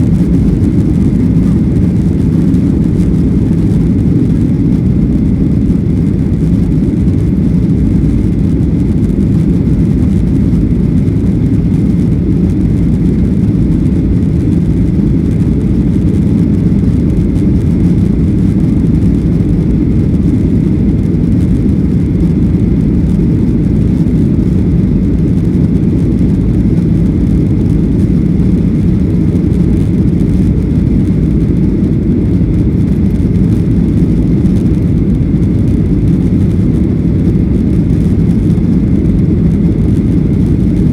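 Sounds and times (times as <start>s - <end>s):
faint steady whine: 0.0s - 40.9s
jet engines rumbling in cabin: 0.0s - 40.9s.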